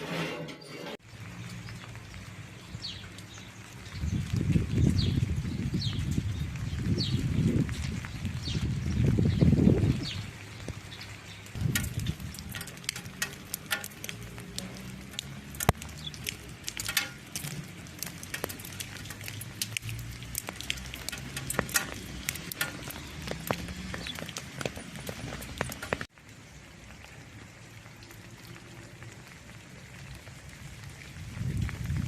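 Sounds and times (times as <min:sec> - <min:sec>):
light taps and clicks: 0:11.6 - 0:26.1.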